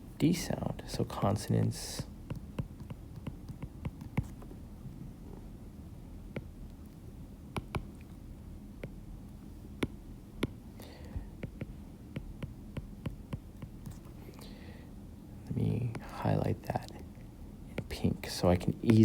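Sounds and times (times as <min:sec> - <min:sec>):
low steady hum: 0:00.0 - 0:19.0
computer mouse clicks: 0:07.6 - 0:07.9.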